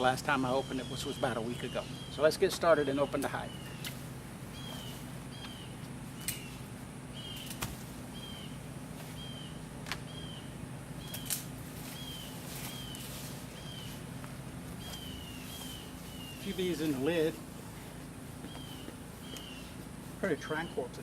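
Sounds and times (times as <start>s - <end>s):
bird chirping: 0.0s - 21.0s
steady low hum: 0.0s - 21.0s.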